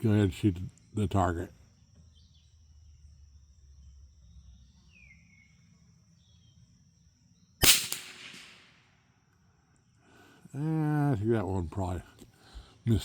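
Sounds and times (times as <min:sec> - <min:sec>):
rifle shot: 0:07.6 - 0:08.9.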